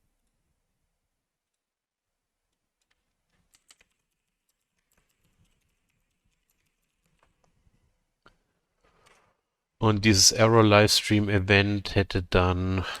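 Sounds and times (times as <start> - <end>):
faint keyboard typing: 0.0 - 0.6, 2.4 - 9.4.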